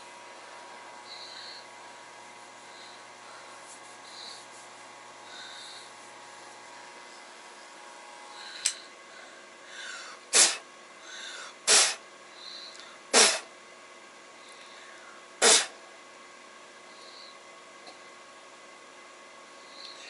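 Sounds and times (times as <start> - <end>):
soft breath intake: 0.5 - 6.2
sharp bursts of breath: 8.3 - 13.5, 14.4 - 15.8.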